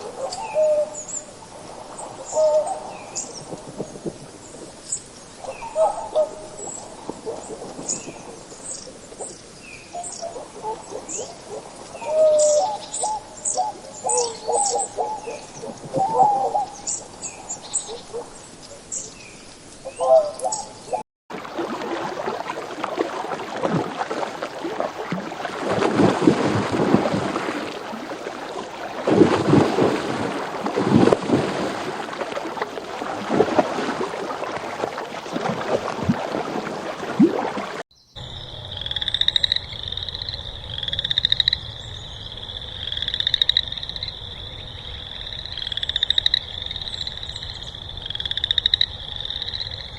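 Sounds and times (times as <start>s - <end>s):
frog chorus: 4.9s - 8.9s, 9.8s - 18.4s, 38.2s - 49.9s
high trilling frog calls: 38.2s - 49.9s.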